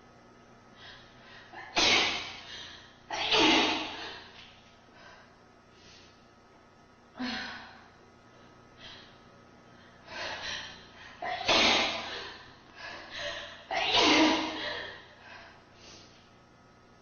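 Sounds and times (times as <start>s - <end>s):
person sneezing: 1.6s - 2.5s, 3.1s - 4.3s, 11.2s - 12.4s, 13.2s - 15.1s.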